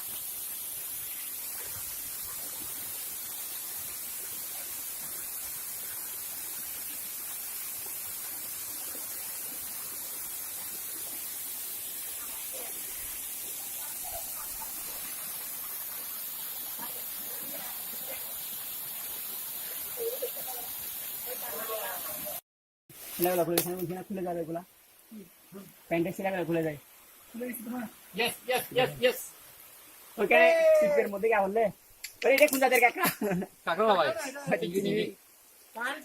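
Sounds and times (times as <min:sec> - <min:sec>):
waterfall stream rushing: 0:08.1 - 0:22.4.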